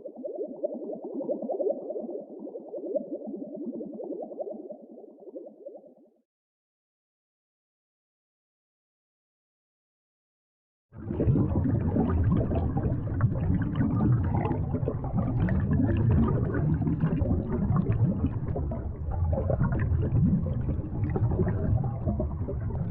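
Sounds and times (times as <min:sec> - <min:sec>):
water bubbling and gurgling: 0:00.0 - 0:06.1, 0:11.0 - 0:22.9.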